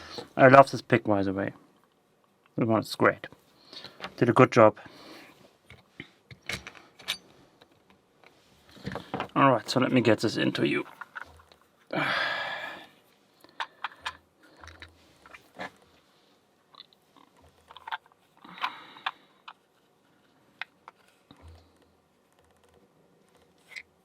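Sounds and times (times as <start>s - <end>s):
lock parts scraping: 6.3s - 7.3s.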